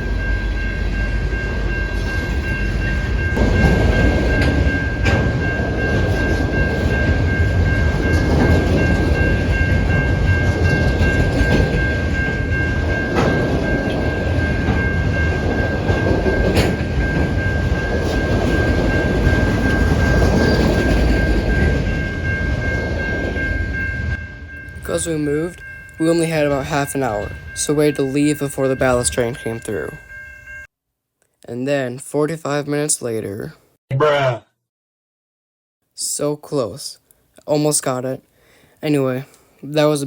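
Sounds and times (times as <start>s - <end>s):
train cars rumbling on rails: 0.0s - 30.7s.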